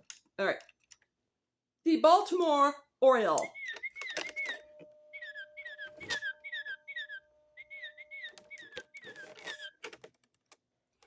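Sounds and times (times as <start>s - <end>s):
bird song through small speaker: 3.4s - 9.7s
faint steady hum: 4.2s - 8.8s.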